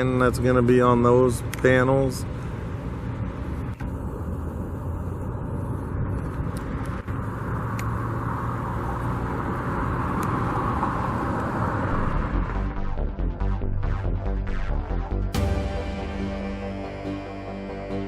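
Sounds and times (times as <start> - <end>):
vehicle passing: 7.4 - 14.0.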